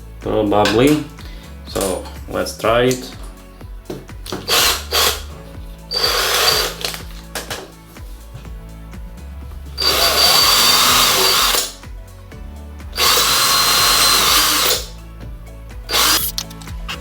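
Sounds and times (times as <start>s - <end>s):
power drill boring into wood: 4.3s - 5.3s, 5.9s - 7.1s, 9.8s - 11.8s, 13.0s - 14.9s, 15.9s - 16.4s.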